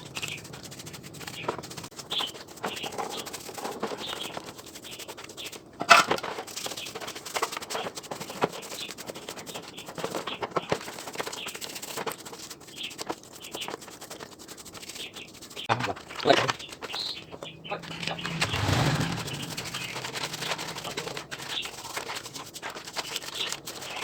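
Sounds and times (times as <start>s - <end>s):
loud clatter: 16.9s - 22.2s.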